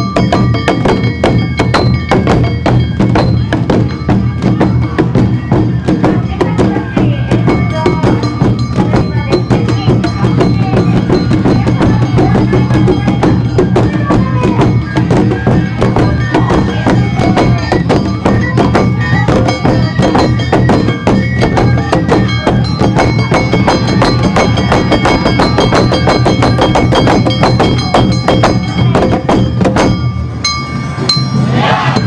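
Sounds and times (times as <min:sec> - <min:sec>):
hand gong clanging: 0:00.0 - 0:04.8, 0:22.0 - 0:32.0
festival drums: 0:00.0 - 0:32.0
high flute: 0:13.9 - 0:26.7.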